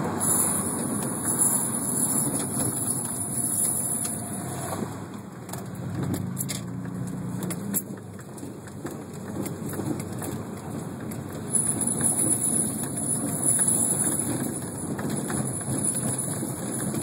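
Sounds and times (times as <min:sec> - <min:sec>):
road and tyre noise: 0:00.0 - 0:17.0
high-pitched brake squeal: 0:00.1 - 0:04.8, 0:11.5 - 0:14.8.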